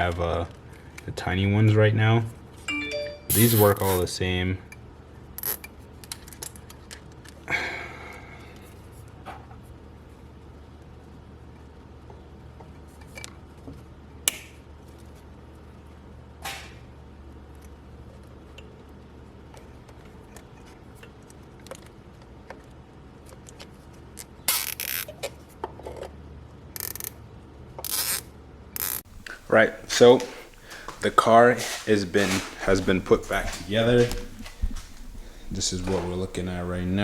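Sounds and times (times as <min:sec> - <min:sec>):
zip ties ratcheting: 0:24.5 - 0:25.1, 0:26.8 - 0:27.1, 0:27.8 - 0:28.2, 0:28.8 - 0:29.0
faint low hum: 0:29.1 - 0:37.0.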